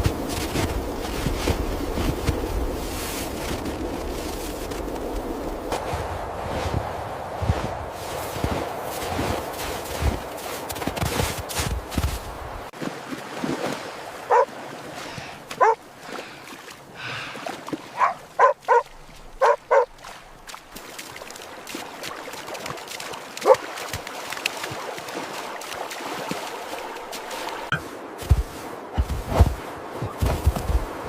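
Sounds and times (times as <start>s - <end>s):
dog barking: 14.3s - 14.5s, 15.6s - 15.8s, 18.0s - 19.9s.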